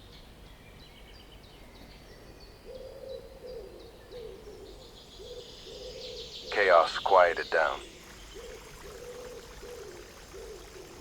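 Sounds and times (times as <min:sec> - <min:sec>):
small birds chirping: 0:06.5 - 0:11.0.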